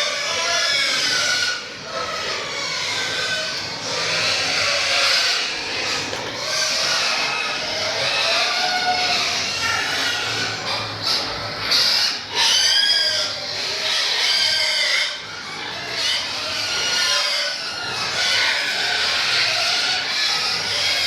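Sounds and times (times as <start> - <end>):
pigs squealing: 0.0 - 21.0.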